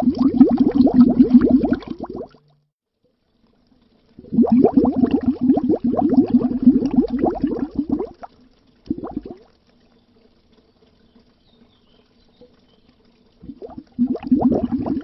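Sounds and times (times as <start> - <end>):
air bubbles gurgling underwater: 0.0 - 2.4, 4.2 - 9.7, 12.4 - 15.0.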